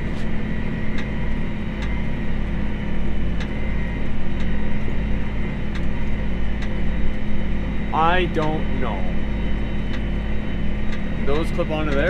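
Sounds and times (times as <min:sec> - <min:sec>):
tractor engine droning: 0:00.0 - 0:12.0
light repeating tick: 0:00.9 - 0:01.1, 0:01.8 - 0:02.6, 0:03.3 - 0:04.6, 0:05.6 - 0:07.3, 0:09.5 - 0:10.1, 0:10.8 - 0:12.0.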